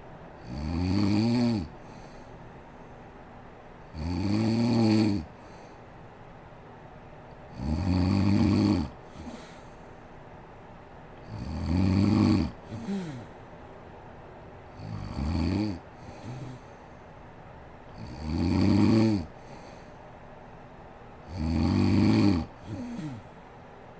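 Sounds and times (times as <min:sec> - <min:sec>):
woman snoring: 0:00.4 - 0:01.7, 0:03.9 - 0:05.3, 0:07.6 - 0:09.6, 0:11.3 - 0:13.3, 0:14.8 - 0:16.7, 0:18.0 - 0:19.6, 0:21.3 - 0:23.3.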